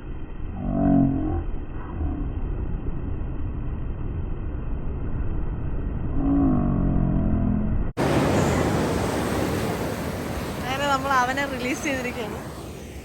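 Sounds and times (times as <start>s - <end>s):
wind rumbling on microphone: 0.0s - 13.0s
sea surf on beach: 8.0s - 13.0s.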